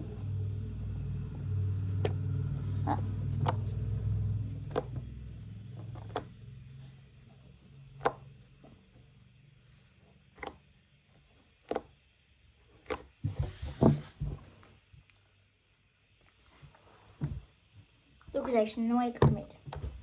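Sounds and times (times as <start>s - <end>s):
slime handling rumble: 0.0s - 9.2s, 10.2s - 10.9s.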